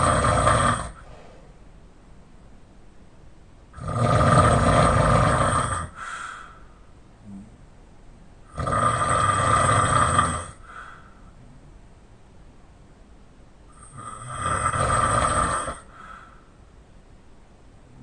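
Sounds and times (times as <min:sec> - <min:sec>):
loud open-mouth snoring: 0:00.0 - 0:01.0, 0:03.8 - 0:06.0, 0:08.5 - 0:10.6, 0:13.7 - 0:15.9.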